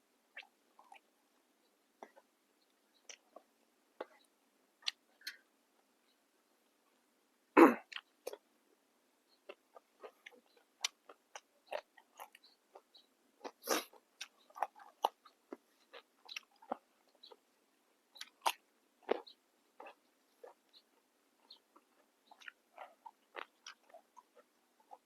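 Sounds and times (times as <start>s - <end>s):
person crunching vegetables: 18.2s - 20.6s, 22.3s - 24.0s.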